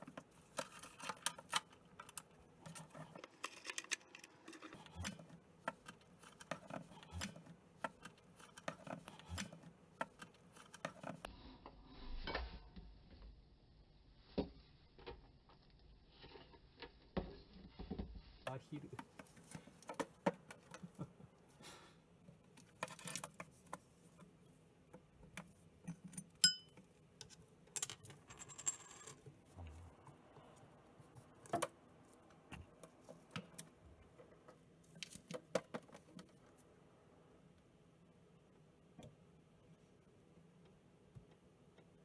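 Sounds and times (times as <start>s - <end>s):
small hard toys clattering: 0.0s - 9.4s.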